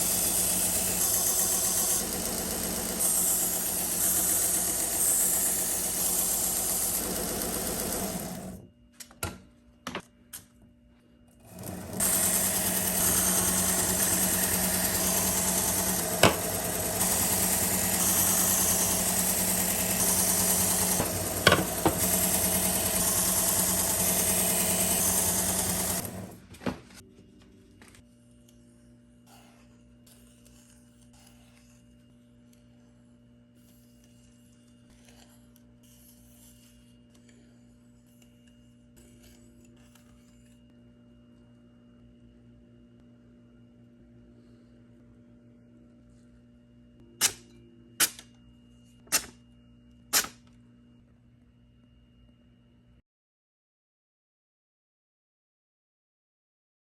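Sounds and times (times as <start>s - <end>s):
knife-sharpening machine grinding: 0.0s - 8.6s, 11.5s - 26.3s
faint hum: 26.5s - 53.0s.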